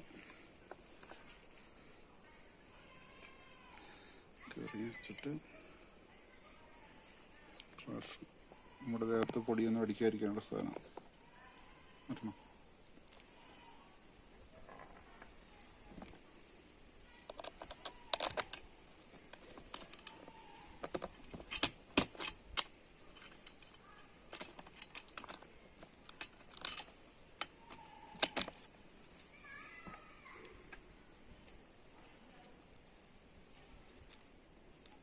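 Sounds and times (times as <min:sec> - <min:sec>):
metal and plastic parts clicking: 0:17.2 - 0:18.7, 0:19.3 - 0:28.7, 0:33.9 - 0:35.0.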